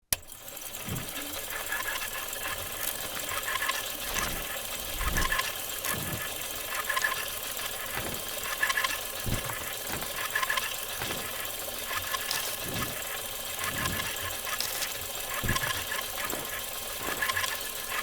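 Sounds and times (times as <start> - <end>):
film projector whirring: 0.0 - 18.0
hiss and crackle: 0.8 - 18.0
low thumps: 9.2 - 14.5.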